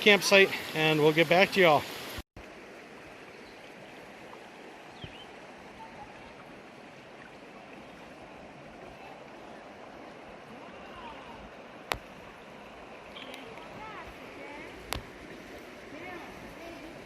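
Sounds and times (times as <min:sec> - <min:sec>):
faint click: 0:13.2 - 0:13.7.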